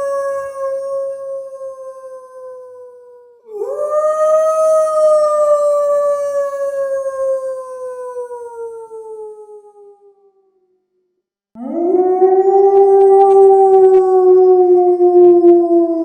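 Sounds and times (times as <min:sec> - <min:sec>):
wolf howling: 0:03.5 - 0:10.3, 0:11.6 - 0:16.0.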